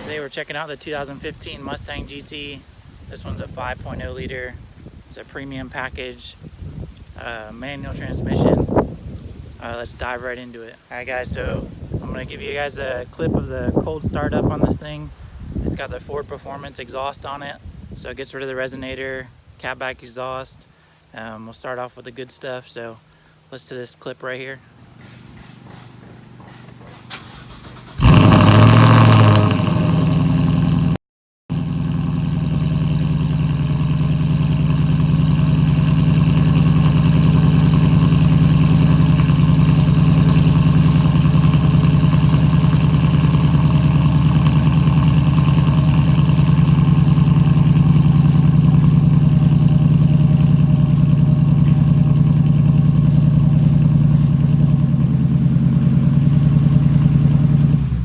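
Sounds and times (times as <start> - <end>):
car engine cold start and idle: 0.0 - 2.6, 24.8 - 58.0.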